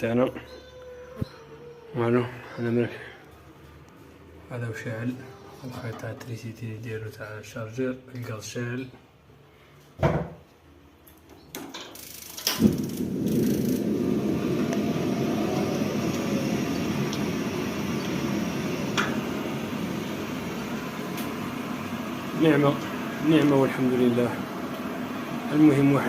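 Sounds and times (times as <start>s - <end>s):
gas flame rushing: 12.3s - 26.0s
burner igniting whump: 12.5s - 25.1s
igniter clicks: 15.5s - 20.2s, 21.0s - 21.9s.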